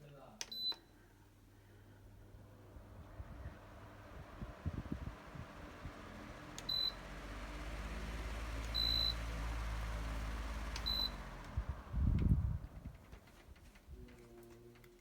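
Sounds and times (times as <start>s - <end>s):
fan control beeps: 0.4s - 0.9s, 6.6s - 7.0s, 8.7s - 9.2s, 10.8s - 11.2s
fan motor humming: 1.4s - 15.0s
low rumble of handling: 2.3s - 15.0s.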